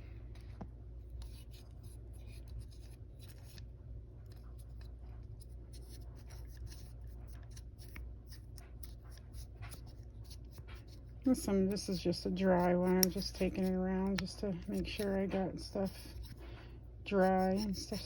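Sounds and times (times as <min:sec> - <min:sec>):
steady low hum: 0:00.0 - 0:18.0
dry scrubbing and scratching: 0:17.1 - 0:18.0.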